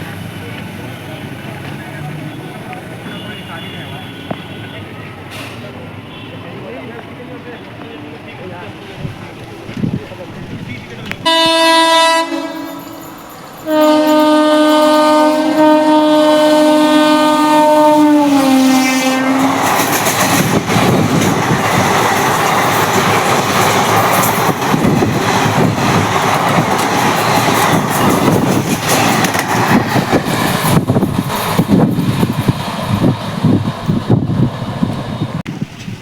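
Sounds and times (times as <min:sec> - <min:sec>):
train wheels rumbling past: 0:08.4 - 0:36.0
train horn blast: 0:11.2 - 0:19.7.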